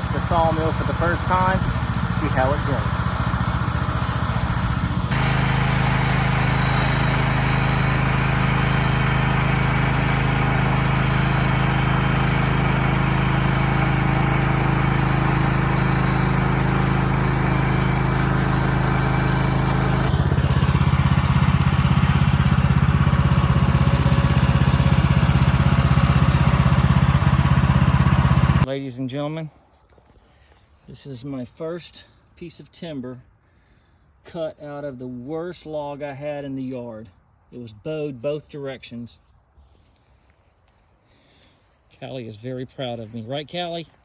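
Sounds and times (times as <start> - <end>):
gasoline engine running: 0.0 - 28.7.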